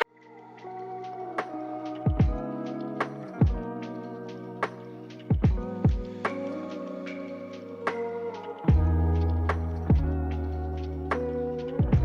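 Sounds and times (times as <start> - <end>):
deep kick drum hits: 8.7 - 9.0, 9.9 - 10.2, 11.8 - 12.0.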